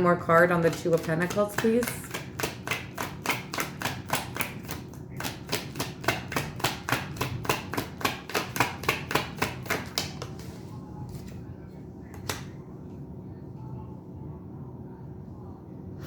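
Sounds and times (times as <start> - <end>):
cards being shuffled: 0.6 - 11.4.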